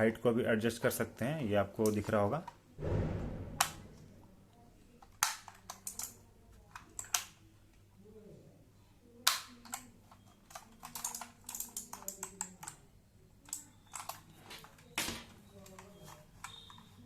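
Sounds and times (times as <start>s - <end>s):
mechanical keyboard clicks: 5.0s - 7.3s, 9.2s - 12.8s.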